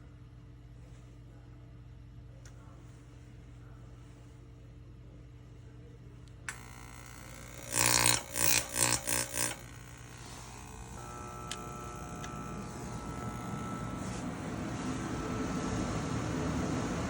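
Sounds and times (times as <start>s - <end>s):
steady hum: 5.4s - 17.0s
oil burner igniter buzzing: 6.3s - 17.0s
igniter click: 10.5s - 15.7s.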